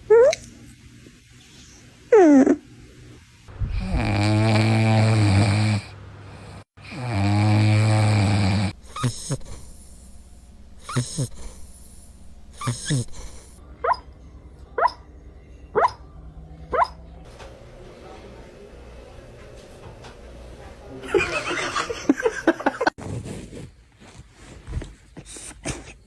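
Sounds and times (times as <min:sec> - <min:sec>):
dog snoring: 0:03.6 - 0:10.0, 0:10.8 - 0:13.6.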